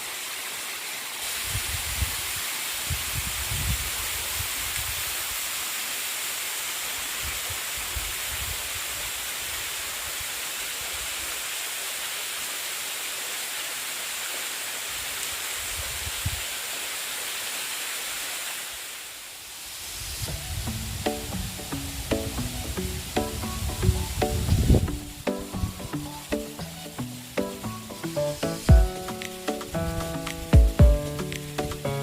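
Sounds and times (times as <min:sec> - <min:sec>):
waterfall rushing: 0:00.0 - 0:32.0.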